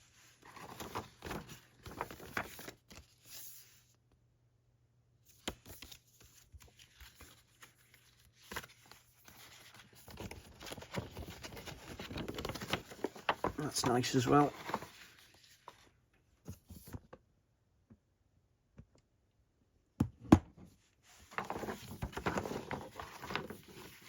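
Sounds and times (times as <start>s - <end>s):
paper rustling and crinkling: 0.0s - 3.9s, 5.3s - 17.0s, 21.0s - 24.0s.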